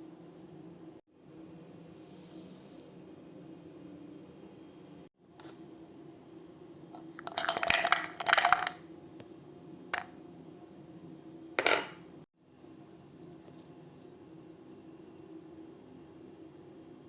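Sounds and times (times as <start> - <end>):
small hard objects clinking: 7.2 - 8.8.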